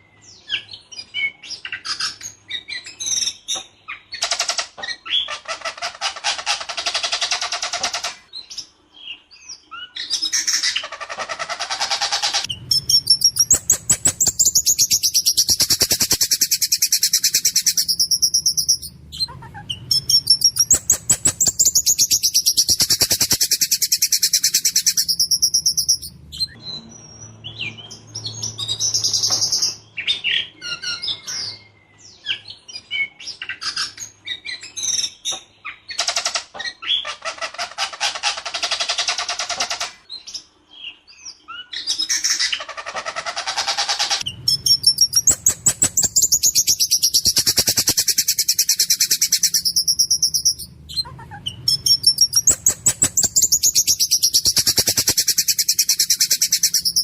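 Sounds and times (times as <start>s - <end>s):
bird singing loudly: 12.3s - 32.5s, 44.2s - 57.0s.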